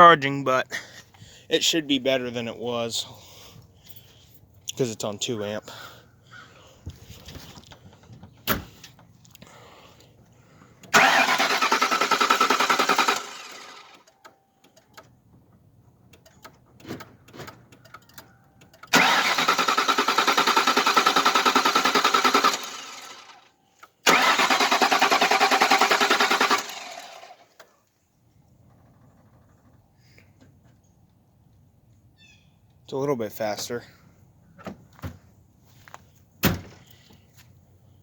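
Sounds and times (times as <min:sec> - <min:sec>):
car engine cranking: 0:10.7 - 0:27.8.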